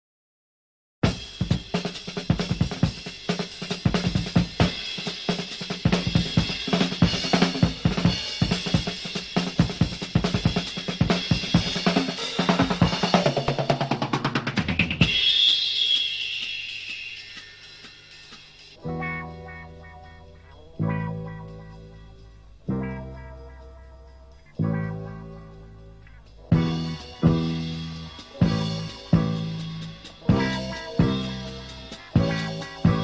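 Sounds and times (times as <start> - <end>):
drum kit played fast: 1.0 - 23.6, 24.3 - 33.0
high ringing tone: 15.1 - 18.8.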